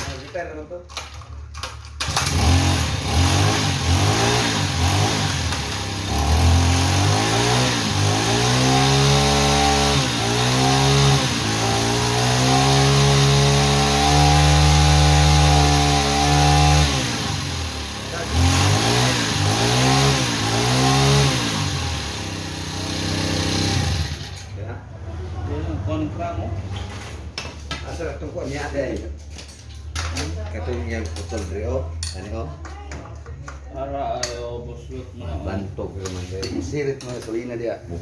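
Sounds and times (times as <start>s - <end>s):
chainsaw engine revving: 1.6s - 24.6s.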